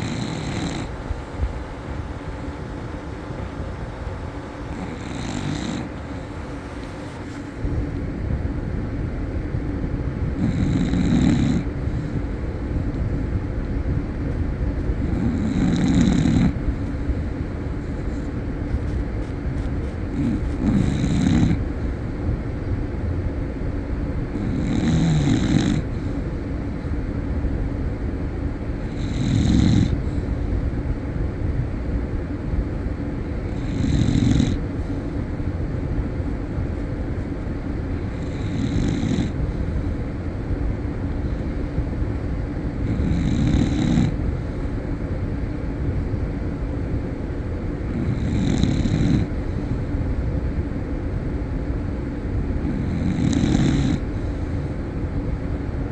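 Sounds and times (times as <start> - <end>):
person snoring: 0.0 - 1.2, 4.7 - 6.3, 10.2 - 12.2, 15.0 - 16.6, 20.1 - 21.6, 24.4 - 26.0, 28.8 - 30.1, 33.4 - 34.7, 38.0 - 39.4, 42.8 - 44.2, 47.9 - 49.4, 52.6 - 54.2
steady background noise: 0.0 - 55.9.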